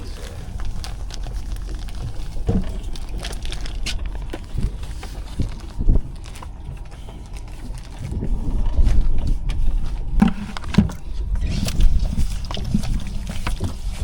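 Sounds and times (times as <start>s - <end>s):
wind rumbling on microphone: 0.0s - 14.0s
dull knocks: 10.1s - 11.1s.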